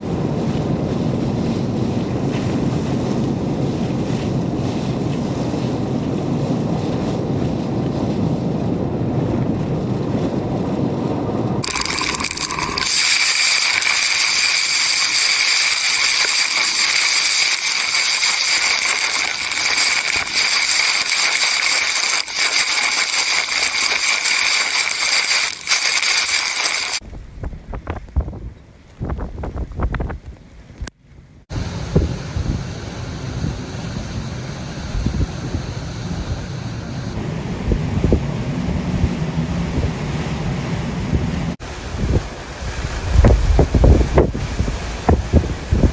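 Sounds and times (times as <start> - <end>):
wind buffeting microphone: 0.0 - 12.9, 27.0 - 30.8, 31.5 - 45.9
high hiss of storm: 31.5 - 39.8.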